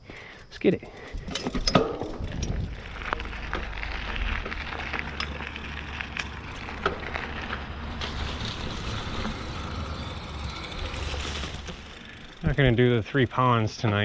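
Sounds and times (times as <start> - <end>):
clicks and crackles on trail: 0.0 - 14.0
wind rumble on microphone: 1.2 - 7.2
bike tyres rolling hiss: 2.1 - 13.6.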